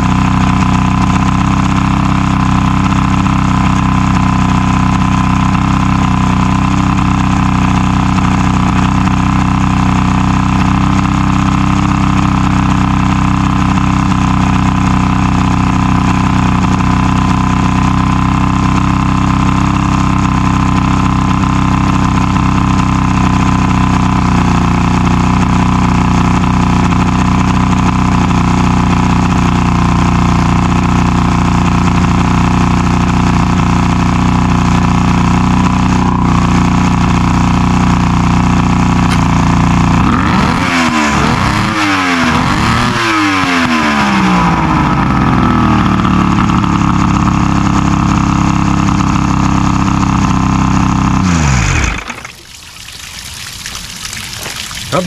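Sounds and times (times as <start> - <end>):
outboard motor idling: 0.0 - 55.0.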